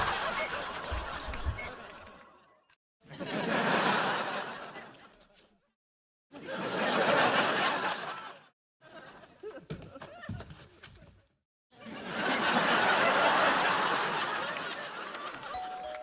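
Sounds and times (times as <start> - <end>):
studio audience laughter: 0.0 - 5.0, 6.3 - 9.7, 11.8 - 15.8.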